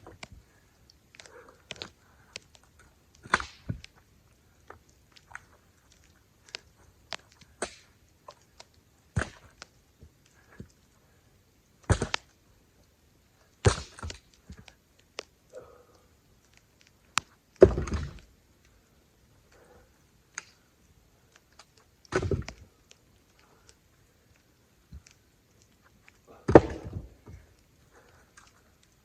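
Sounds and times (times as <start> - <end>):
firewood thunking into truck bed: 22.1 - 22.5, 26.5 - 27.2.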